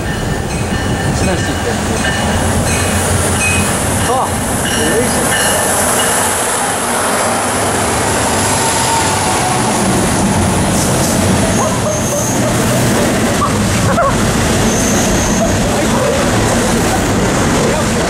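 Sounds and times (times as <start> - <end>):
train wheels rumbling on rail: 0.0 - 18.0
faint wheel squeals: 14.6 - 15.6.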